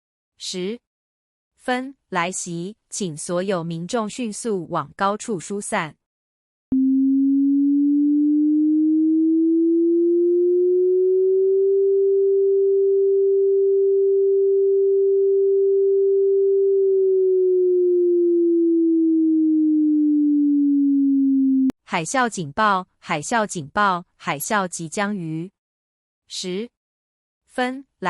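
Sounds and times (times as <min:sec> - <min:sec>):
warning siren tone: 0:06.7 - 0:21.8.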